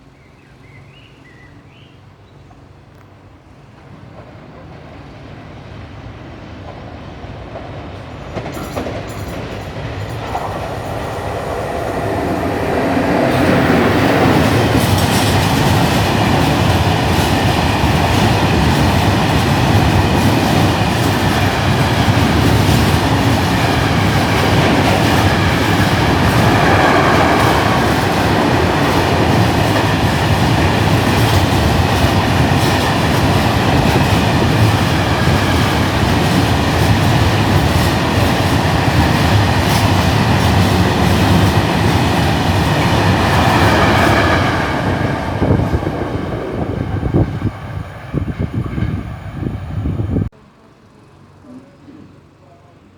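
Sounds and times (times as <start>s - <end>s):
train wheels rumbling on rail: 0.0s - 50.4s
wheels clattering over rail joints: 8.2s - 49.0s.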